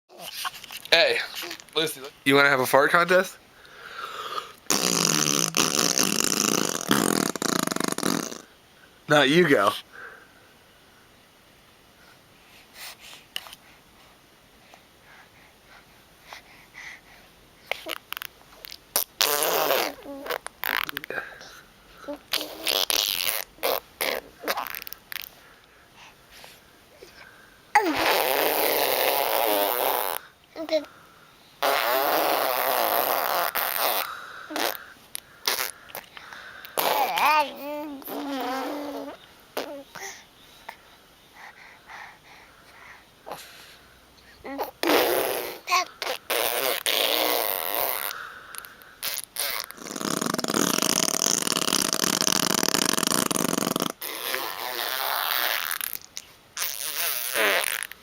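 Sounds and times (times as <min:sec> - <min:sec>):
sputtering farts: 0:04.7 - 0:08.5, 0:17.8 - 0:21.1, 0:22.3 - 0:25.3, 0:27.8 - 0:30.2, 0:31.6 - 0:36.1, 0:44.8 - 0:48.1, 0:49.0 - 0:58.0.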